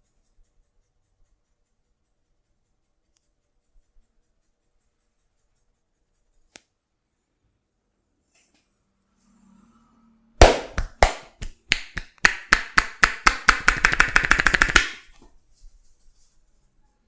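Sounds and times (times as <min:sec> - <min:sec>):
rhythmic hand slaps: 0:10.4 - 0:15.1.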